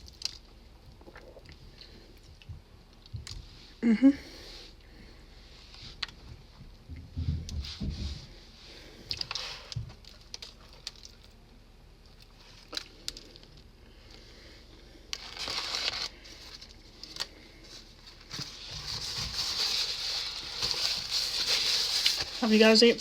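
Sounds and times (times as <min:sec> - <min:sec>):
wrapper crinkling: 0:09.2 - 0:11.4, 0:15.1 - 0:23.0.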